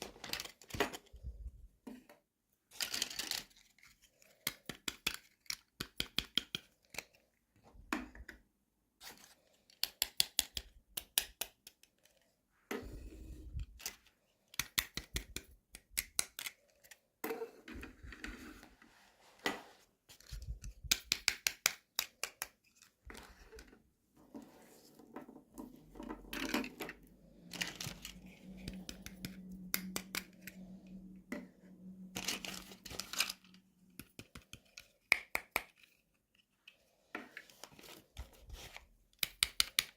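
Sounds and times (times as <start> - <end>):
toy packaging clicks and snips: 2.7 - 7.2, 13.6 - 17.1, 27.5 - 31.0, 32.1 - 36.1.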